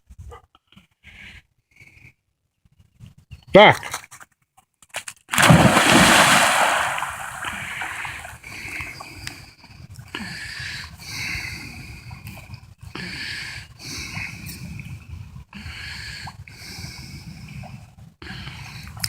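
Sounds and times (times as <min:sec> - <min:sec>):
dog splashing into water: 0:05.3 - 0:08.4
water sloshing as dog swims: 0:05.4 - 0:08.6.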